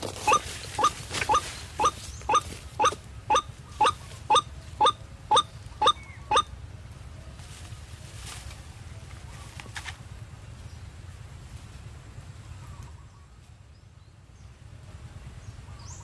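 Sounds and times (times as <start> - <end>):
waterhen calling: 0.0 - 6.5.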